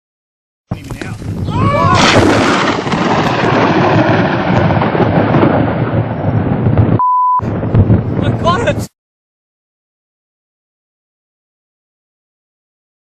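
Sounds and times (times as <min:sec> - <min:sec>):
rolling thunder: 0:00.8 - 0:08.9
short steady beep: 0:07.0 - 0:07.4.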